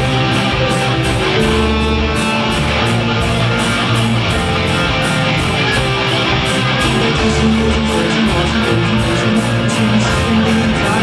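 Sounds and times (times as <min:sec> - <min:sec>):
bass and steady beat: 0:00.0 - 0:11.0
guitar strumming: 0:00.0 - 0:11.0.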